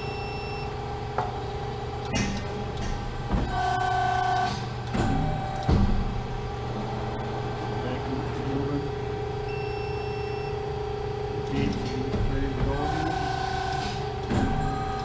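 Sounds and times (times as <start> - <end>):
hydraulic pump humming and whining: 0.0 - 15.0
machine clunk: 2.0 - 3.6, 4.4 - 6.2, 13.8 - 14.8.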